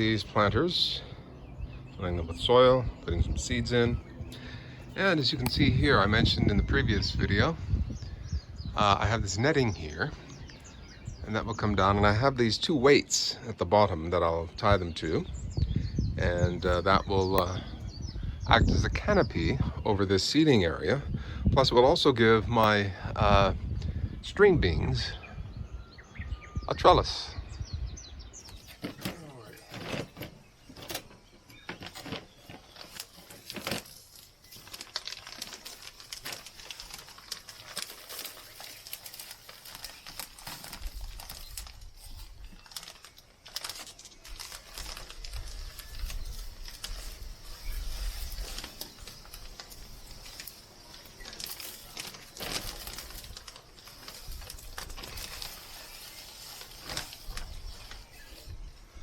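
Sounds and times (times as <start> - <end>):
plastic bag crinkling and tearing: 28.6 - 58.7
soil pattering down: 31.7 - 58.5.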